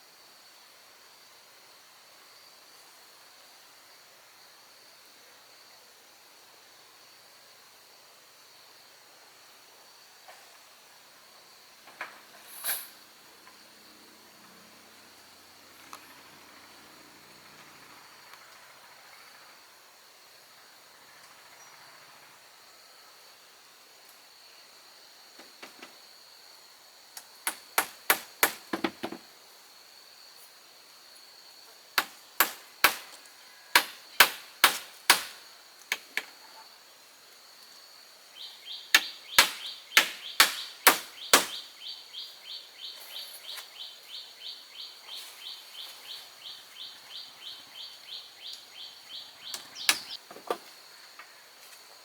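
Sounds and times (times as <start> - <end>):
high insect drone: 0.0 - 52.0
sharp strikes on wood: 27.5 - 29.2, 32.0 - 33.2, 33.8 - 36.1, 39.0 - 41.6.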